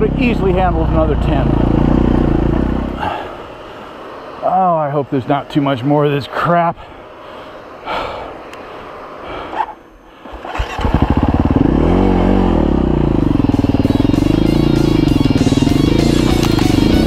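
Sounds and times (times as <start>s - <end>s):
dirt bike engine revving: 0.0s - 4.4s, 9.6s - 17.0s.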